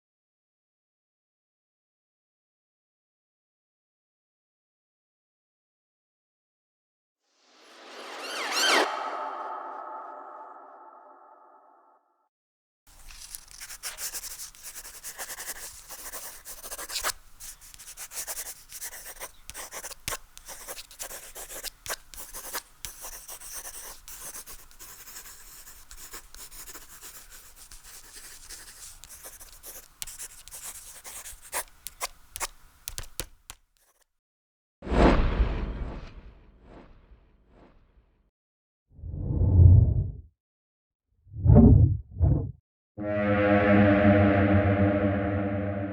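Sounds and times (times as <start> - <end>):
dry scratching and rubbing: 12.9 - 22.9.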